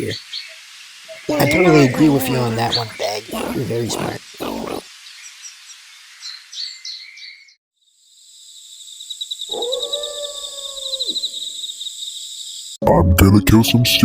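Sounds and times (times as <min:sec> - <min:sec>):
crickets trilling: 0:00.0 - 0:06.3, 0:08.0 - 0:12.8
dog howling: 0:09.5 - 0:11.2.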